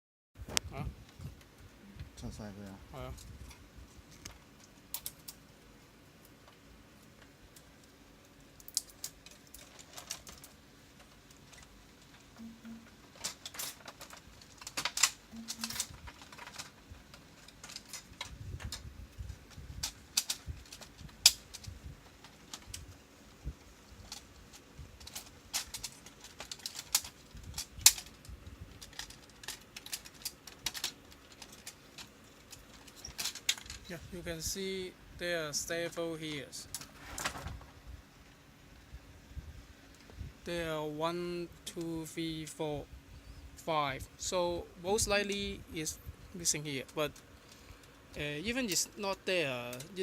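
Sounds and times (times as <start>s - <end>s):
plastic and metal parts clicking: 8.6s - 18.9s, 19.5s - 22.9s, 23.9s - 33.9s.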